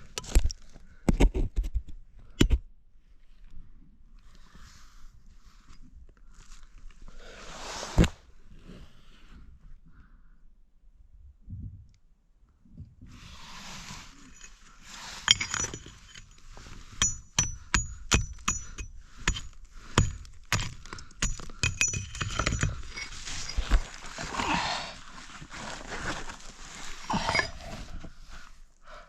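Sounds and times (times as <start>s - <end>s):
scraping: 13.3s - 28.6s
metal tool striking rock: 15.2s - 23.8s, 27.1s - 27.6s.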